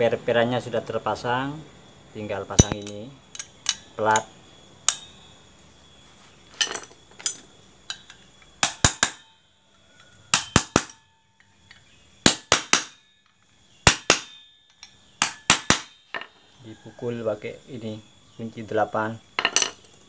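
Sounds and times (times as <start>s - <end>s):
wrench tapping on metal plate: 2.6s - 4.2s.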